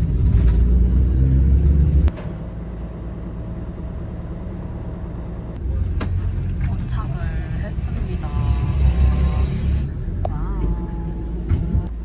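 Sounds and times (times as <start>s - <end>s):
bus engine and road rumble: 0.0s - 12.0s.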